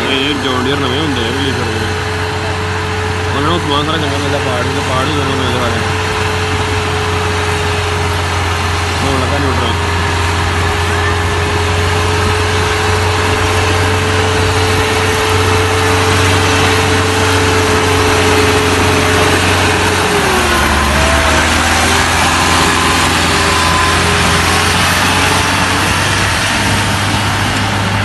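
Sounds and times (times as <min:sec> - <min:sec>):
tractor diesel engine running: 0:00.0 - 0:28.0.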